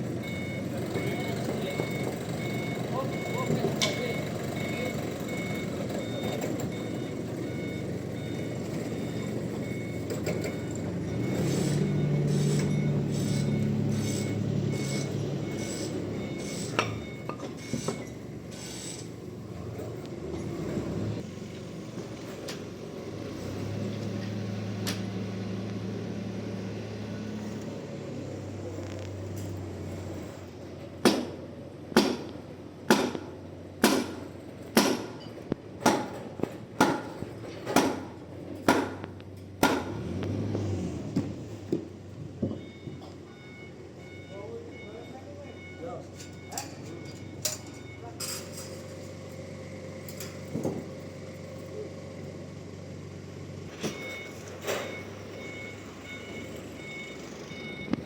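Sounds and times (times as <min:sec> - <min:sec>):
reversing beeper: 0:00.2 - 0:19.0, 0:42.5 - 0:49.0, 0:53.7 - 0:58.0.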